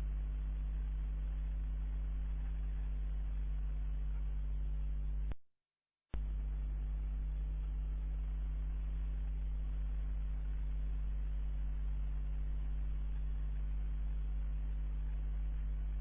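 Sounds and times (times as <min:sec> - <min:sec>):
microphone low-frequency hum: 0:00.0 - 0:05.4, 0:06.2 - 0:16.0.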